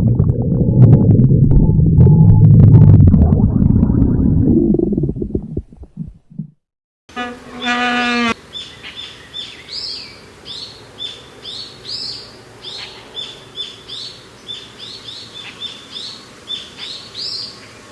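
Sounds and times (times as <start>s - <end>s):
stomach growl: 0.0s - 6.6s
birds chirping: 7.1s - 17.9s.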